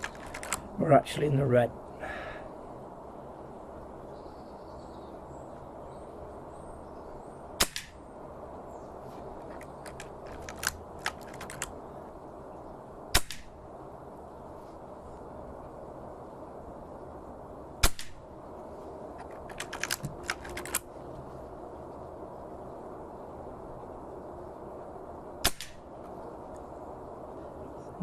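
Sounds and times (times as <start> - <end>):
light mechanical clicks: 0.0 - 0.7, 9.4 - 11.7, 19.2 - 20.9
air rifle shots: 7.6 - 8.0, 13.1 - 13.6, 17.8 - 18.2, 25.4 - 25.8.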